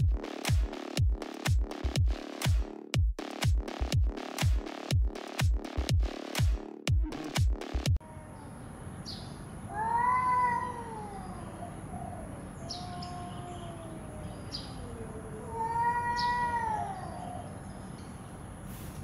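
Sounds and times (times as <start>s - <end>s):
cat meowing: 9.7s - 17.5s.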